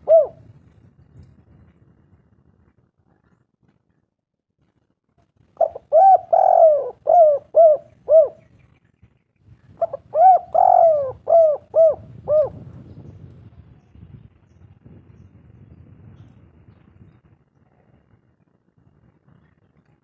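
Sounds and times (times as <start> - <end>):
dove cooing: 0.0 - 0.5, 5.6 - 8.5, 9.8 - 12.7.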